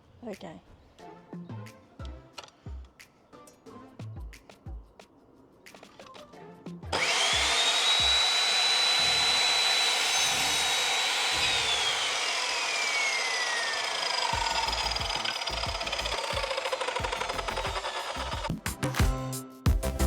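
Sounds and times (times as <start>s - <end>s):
electric mitre saw whining: 6.9s - 18.5s.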